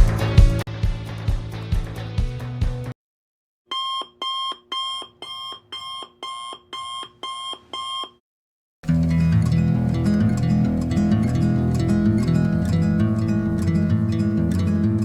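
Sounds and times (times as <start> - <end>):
alarm clock beeping: 3.7 - 8.1.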